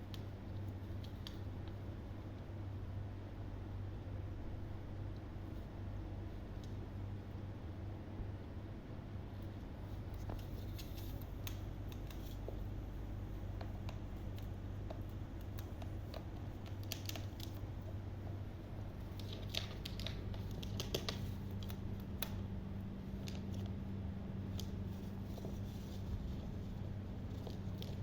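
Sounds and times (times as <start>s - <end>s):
steady low hum: 0.0s - 28.0s
parrot claws and beak scratching: 0.1s - 1.8s, 9.9s - 18.0s, 18.9s - 22.4s, 24.5s - 28.0s.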